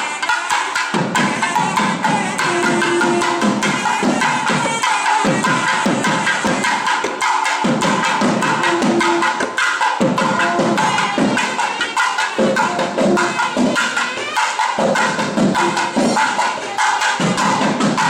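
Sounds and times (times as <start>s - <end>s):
fast dense drumming: 14.8s - 18.0s.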